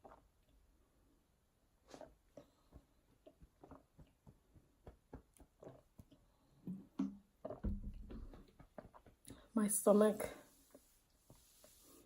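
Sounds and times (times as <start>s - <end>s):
person gulping soft drink: 0.0s - 0.8s, 1.7s - 9.5s.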